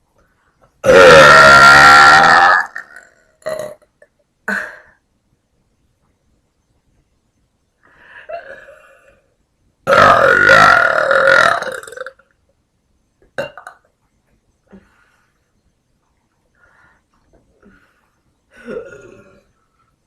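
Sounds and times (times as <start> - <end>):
woman burping: 0.8 - 3.9, 8.3 - 9.2, 9.9 - 12.1, 13.4 - 13.8, 18.5 - 19.5.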